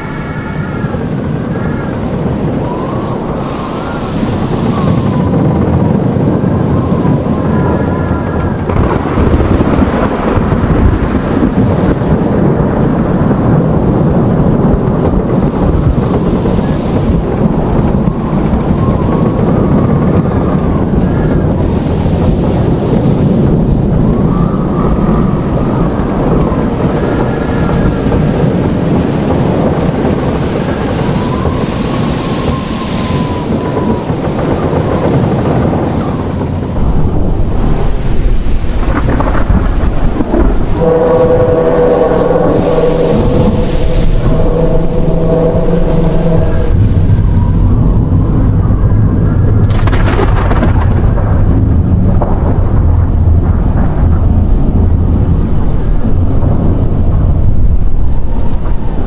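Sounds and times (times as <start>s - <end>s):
wavering whistling tones: 0.0s - 9.8s, 15.7s - 50.0s
heavy waves: 0.0s - 59.0s
strong wind: 0.0s - 59.0s.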